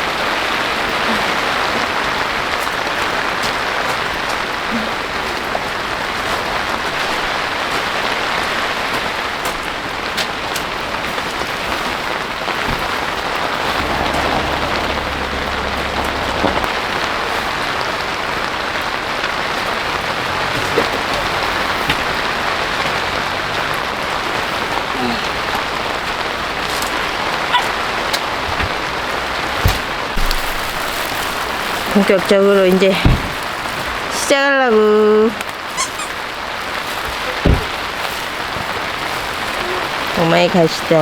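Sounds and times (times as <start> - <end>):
steady rain falling: 0.0 - 41.0
low rumble: 13.6 - 19.2.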